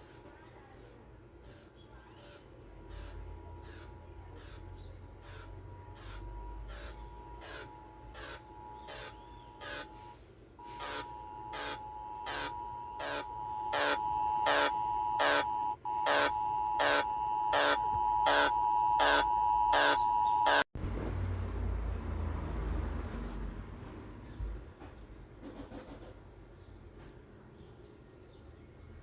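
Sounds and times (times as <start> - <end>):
two-tone alarm with pulsing beep: 5.2 - 20.7.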